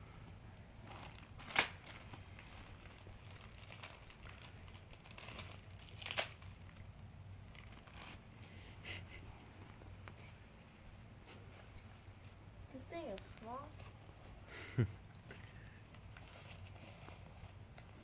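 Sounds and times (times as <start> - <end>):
diaper crinkling and rustling: 0.8 - 8.2
sharp crackles: 0.8 - 8.2.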